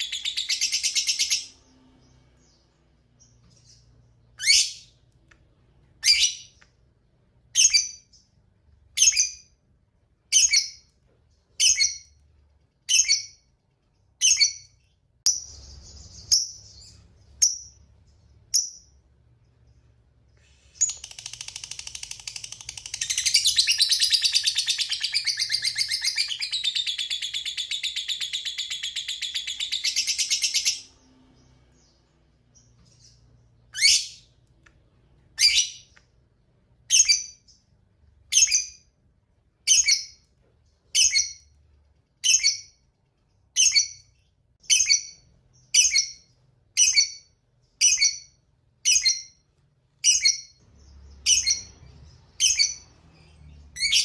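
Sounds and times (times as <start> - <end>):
lovebird chattering trill: 20.8 - 30.8.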